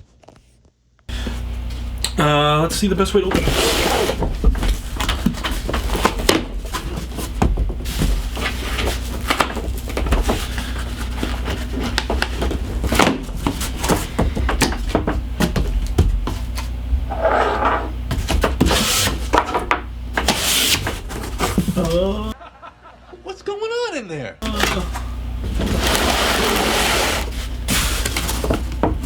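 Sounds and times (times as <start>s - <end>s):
steady low hum: 1.1s - 23.0s, 24.4s - 29.0s
cardboard box scraping and rustling: 3.3s - 19.6s, 20.2s - 22.3s, 24.6s - 29.0s.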